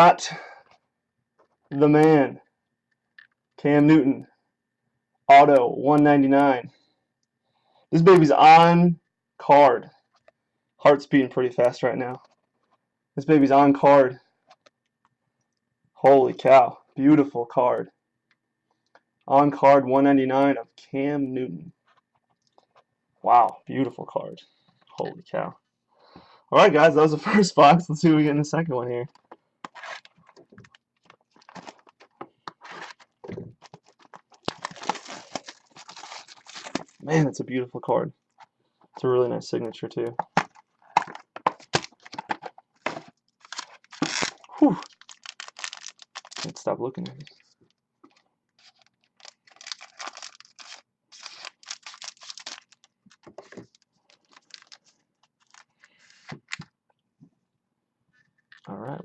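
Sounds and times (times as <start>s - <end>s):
card packaging rustling: 29.2s - 37.1s, 40.1s - 56.7s.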